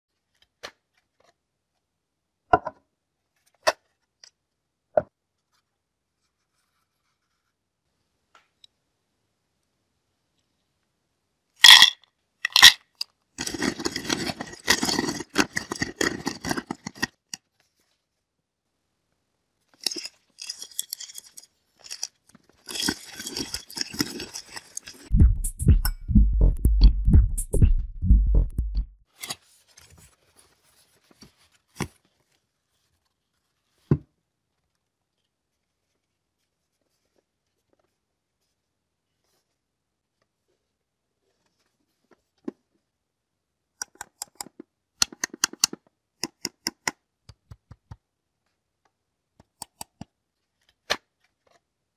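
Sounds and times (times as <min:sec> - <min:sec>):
nut grinder crushing peanuts: 0:13.4 - 0:17.1
low thumping: 0:25.1 - 0:29.0.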